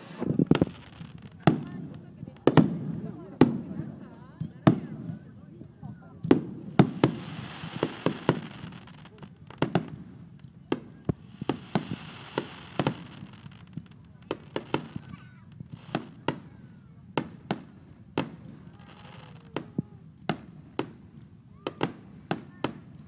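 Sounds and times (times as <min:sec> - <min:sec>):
firework hiss: 0:00.0 - 0:03.5, 0:06.3 - 0:16.5
firework shells bursting: 0:06.3 - 0:10.0.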